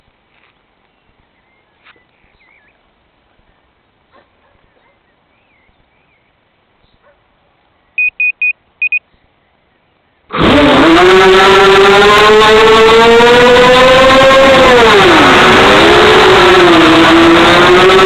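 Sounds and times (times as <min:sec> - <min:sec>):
electronic beeps: 0:08.0 - 0:09.0
quadcopter motors whining: 0:10.3 - 0:18.0.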